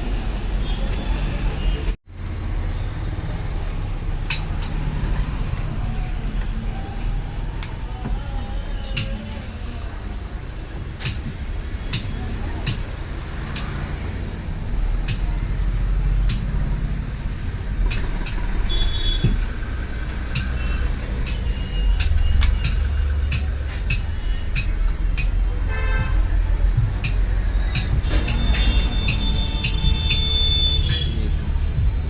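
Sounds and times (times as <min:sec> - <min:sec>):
road traffic rumble: 0:00.0 - 0:32.0
vehicle horn tooting: 0:18.7 - 0:19.4, 0:28.4 - 0:31.2.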